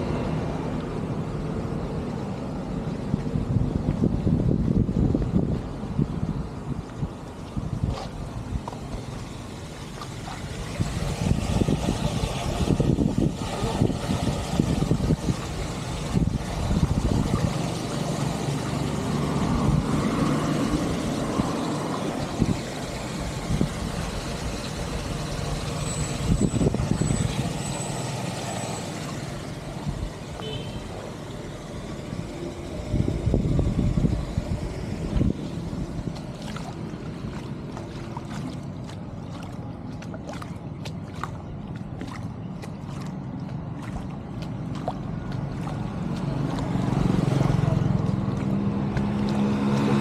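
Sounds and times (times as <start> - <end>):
engine running: 0.0 - 50.0.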